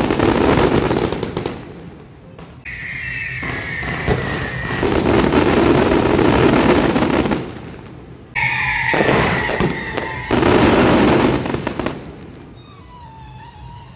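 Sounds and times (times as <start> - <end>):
fireworks exploding in volleys: 0.0 - 12.6
shrill firework whistle: 2.7 - 6.9, 8.4 - 13.9.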